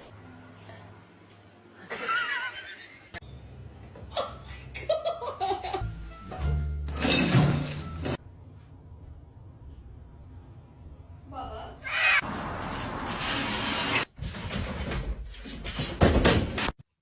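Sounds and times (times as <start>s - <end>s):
background music: 5.6s - 8.2s.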